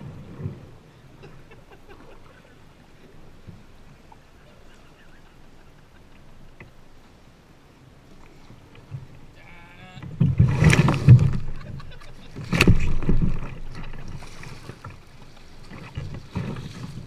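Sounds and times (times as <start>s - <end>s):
kayak splashing and knocking: 8.1s - 17.0s
pitched bleat-like sound: 9.4s - 10.0s.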